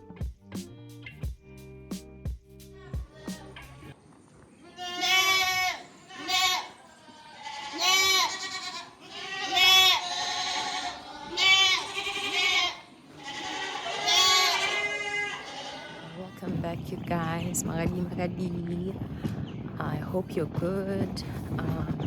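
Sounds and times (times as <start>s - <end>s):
goats bleating: 4.6s - 16.4s.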